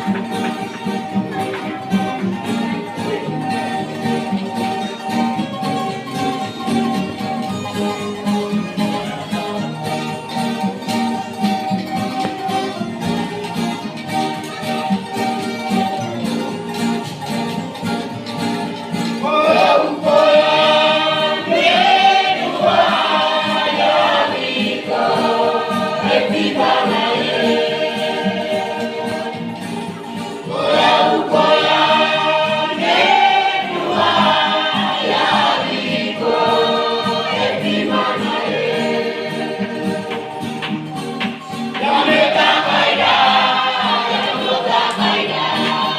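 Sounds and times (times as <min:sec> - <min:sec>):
youth choir singing a hymn: 0:19.2 - 0:40.6, 0:41.7 - 0:45.9.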